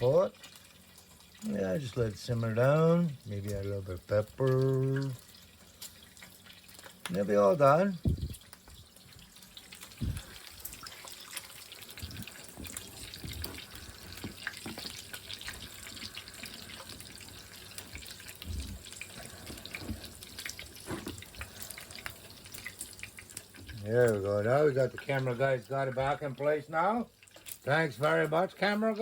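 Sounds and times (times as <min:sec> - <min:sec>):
food hissing and crackling: 0:00.0 - 0:29.0
low thumps: 0:08.0 - 0:08.4.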